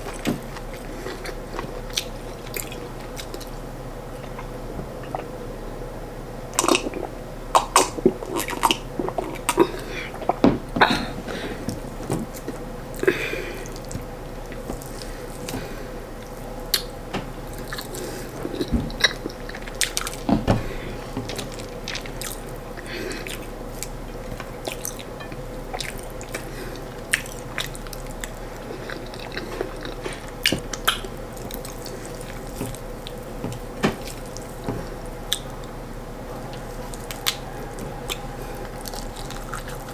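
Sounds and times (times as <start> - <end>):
faint hum: 0.0 - 39.9
wet chewing and lip smacks: 25.7 - 34.6, 35.3 - 35.7.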